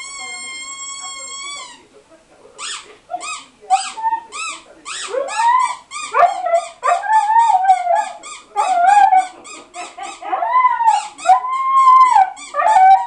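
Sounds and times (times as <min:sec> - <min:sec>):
squeaky toy squeaking: 0:00.0 - 0:01.8, 0:02.6 - 0:13.0
dog whining and howling: 0:05.1 - 0:13.0.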